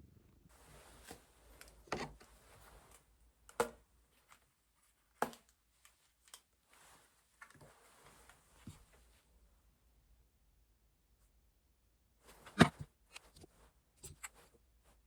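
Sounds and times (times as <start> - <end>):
soft rustling: 0.5 - 9.7.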